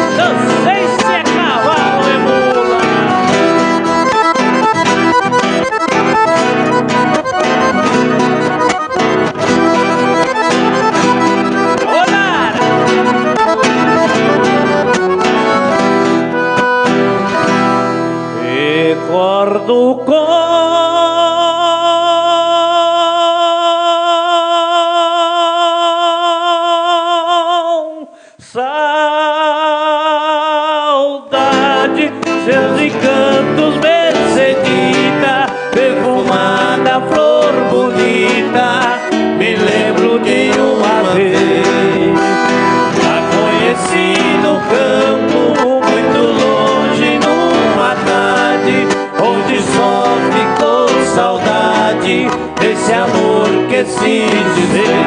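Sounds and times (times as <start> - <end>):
plucked string accompaniment: 0.0 - 19.6, 31.4 - 55.0
accordion melody: 0.0 - 22.6, 31.3 - 55.0.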